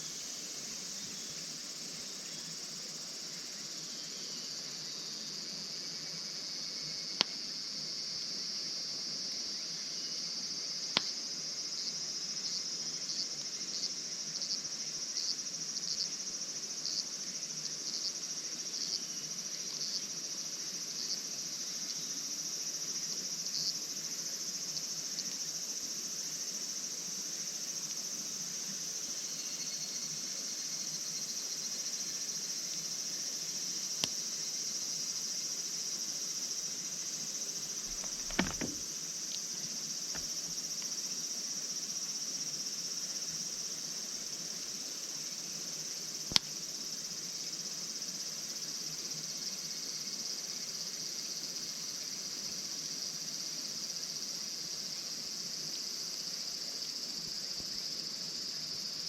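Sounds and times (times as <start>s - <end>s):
crickets chirping: 0.0s - 59.0s
sharp knock: 37.9s - 38.8s
faint ticks: 40.1s - 41.0s, 46.3s - 46.6s.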